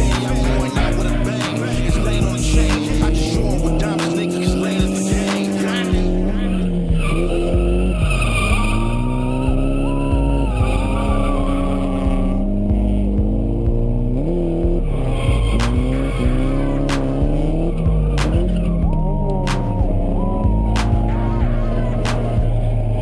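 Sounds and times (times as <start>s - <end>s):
tires skidding and squealing: 0.0s - 23.0s
turbocharged engine revving: 0.0s - 23.0s.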